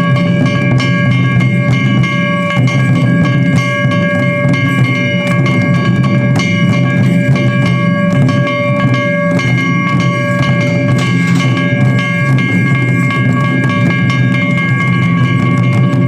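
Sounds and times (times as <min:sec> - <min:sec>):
drums beaten fast: 0:00.0 - 0:16.0
high held note: 0:00.0 - 0:16.0.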